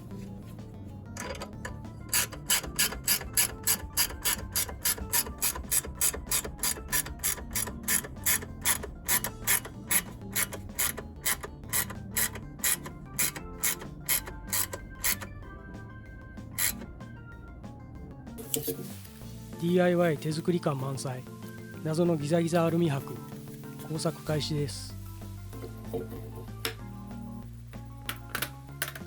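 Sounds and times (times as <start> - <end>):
background music: 0.0 - 29.0
ratchet wrench clicking: 1.2 - 15.4, 16.6 - 16.9.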